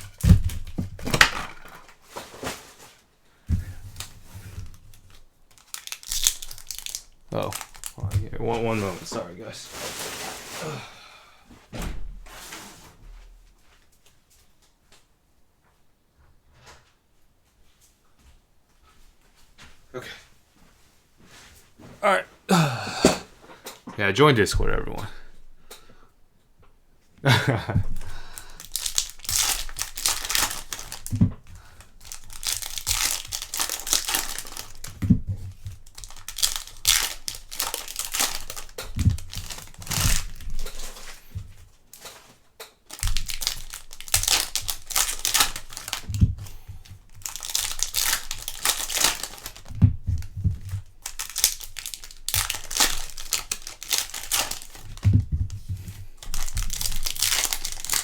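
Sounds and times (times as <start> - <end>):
foil wrappers tearing and crinkling: 0.0 - 3.0, 3.8 - 10.9, 27.8 - 55.1, 55.9 - 58.0.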